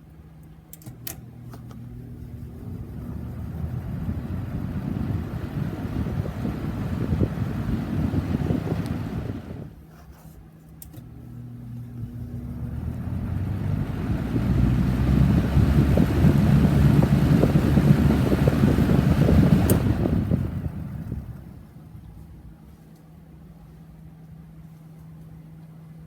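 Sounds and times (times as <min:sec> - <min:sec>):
low motor hum: 0:00.8 - 0:09.8, 0:10.9 - 0:22.6
box fan air rushing: 0:01.0 - 0:22.7.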